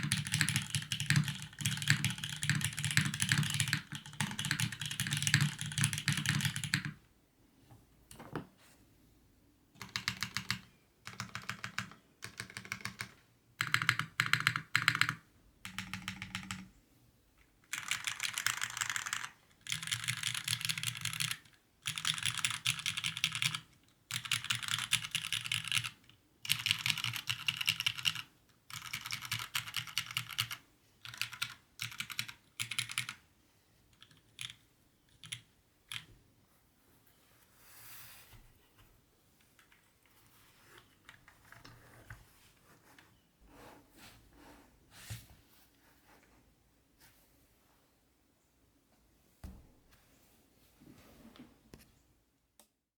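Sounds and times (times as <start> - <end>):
typing on mechanical keyboard: 0.0 - 7.0, 9.8 - 16.7, 17.6 - 33.2, 33.9 - 36.1.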